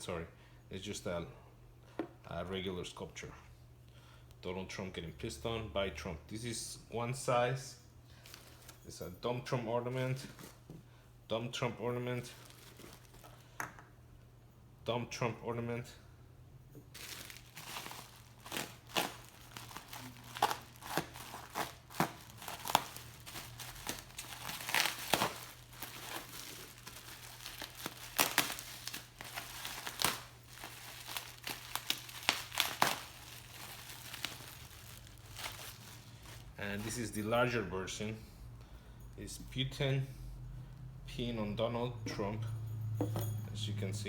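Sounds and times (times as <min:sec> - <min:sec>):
packing material crinkling and tearing: 0:12.2 - 0:13.4, 0:16.9 - 0:37.1.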